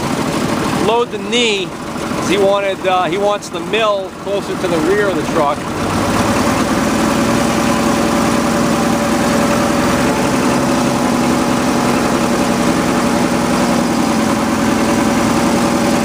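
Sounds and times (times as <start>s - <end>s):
tractor engine running: 0.0s - 16.0s.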